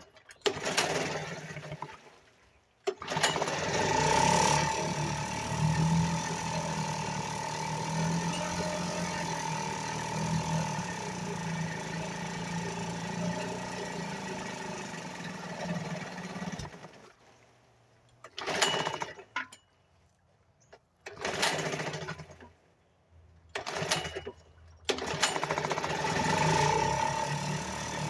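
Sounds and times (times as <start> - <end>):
outboard motor running: 0.0 - 17.5, 23.5 - 28.0.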